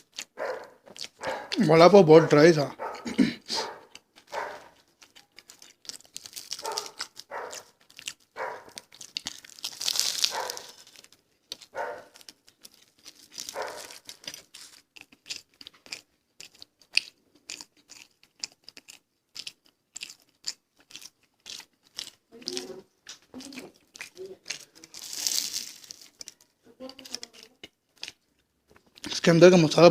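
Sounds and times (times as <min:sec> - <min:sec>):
wet mouth clicks: 0:00.0 - 0:01.6, 0:02.9 - 0:10.8, 0:13.5 - 0:29.2
chewing and crunching: 0:00.0 - 0:29.9
breath noise: 0:01.2 - 0:01.6, 0:02.7 - 0:03.9.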